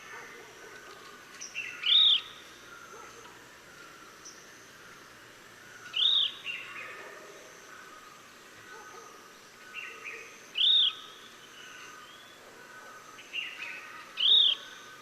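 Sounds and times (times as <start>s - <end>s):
bird calling: 5.8s - 15.0s.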